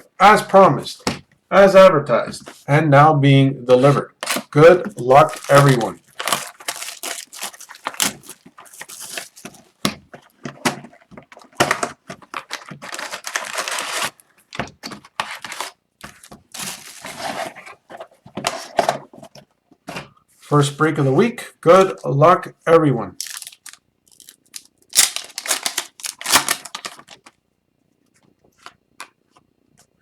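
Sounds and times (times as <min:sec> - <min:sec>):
cardboard and wrappers tearing: 0:04.2 - 0:09.8, 0:12.2 - 0:14.2, 0:16.5 - 0:17.7, 0:23.2 - 0:27.3
packs knocking and clicking: 0:04.2 - 0:17.1.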